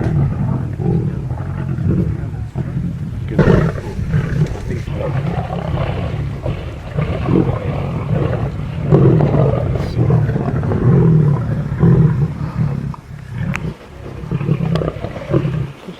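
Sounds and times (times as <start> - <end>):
lions growling: 0.1 - 15.9
sharp clicks: 3.4 - 4.9.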